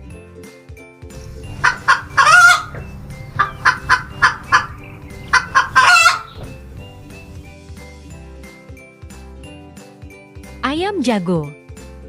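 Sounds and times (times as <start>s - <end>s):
hen clucking: 1.2s - 7.5s
hen squawking: 1.2s - 7.5s.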